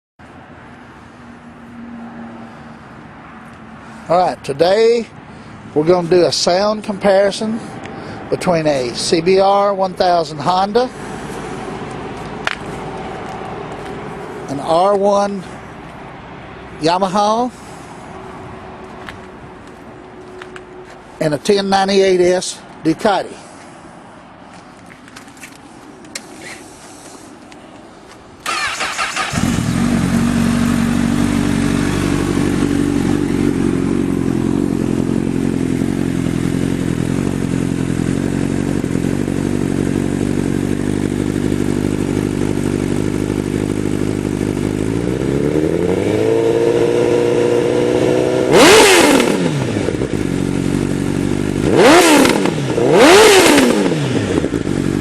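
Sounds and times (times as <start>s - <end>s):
motorcycle engine starting and idling: 28.4s - 55.0s.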